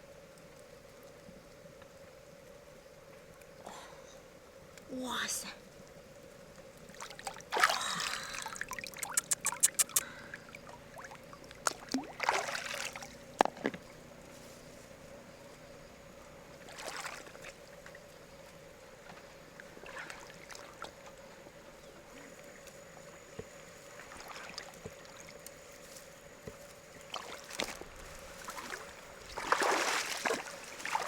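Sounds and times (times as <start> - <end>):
water splashing and trickling: 6.6 - 13.8, 16.6 - 18.2, 18.9 - 21.3, 23.8 - 25.9, 26.8 - 31.0
sharp clicks: 9.0 - 10.1.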